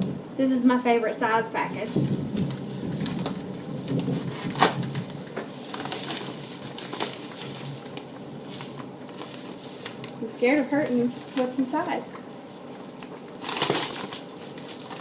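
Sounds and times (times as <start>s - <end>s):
package crinkling and rustling: 1.7s - 15.0s.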